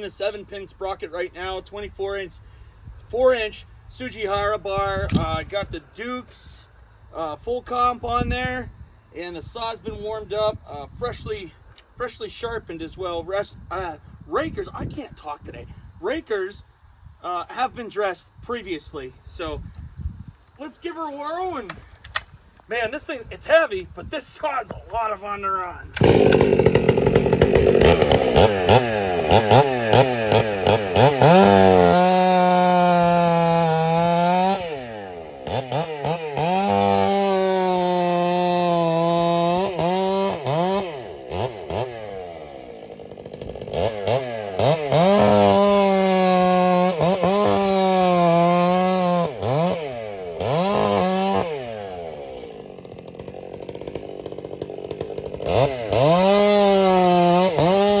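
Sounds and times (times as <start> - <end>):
chainsaw cutting wood: 25.5 - 58.0.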